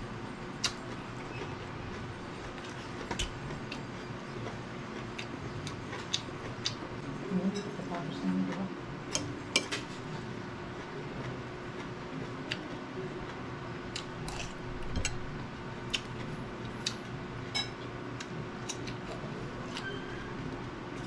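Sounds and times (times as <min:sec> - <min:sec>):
chewing crunchy vegetables: 0:11.2 - 0:17.2, 0:17.8 - 0:19.9.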